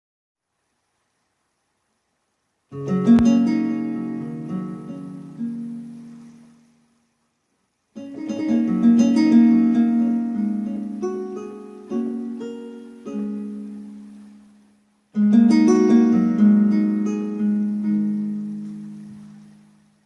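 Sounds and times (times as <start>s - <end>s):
synthesizer plucked-string notes: 2.8s - 6.7s, 8.0s - 20.0s.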